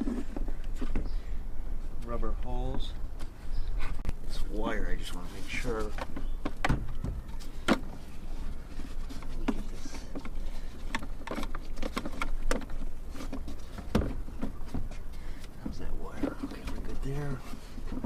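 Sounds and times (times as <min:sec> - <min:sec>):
clicks and knocks of airbox handled: 0:00.0 - 0:01.2, 0:05.5 - 0:18.0.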